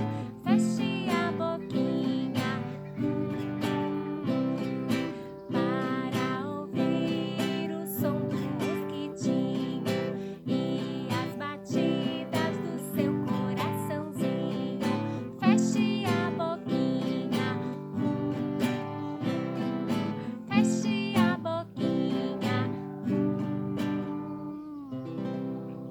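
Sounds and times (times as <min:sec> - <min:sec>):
person singing faintly: 0:00.0 - 0:25.2
acoustic guitar strumming: 0:00.0 - 0:25.9.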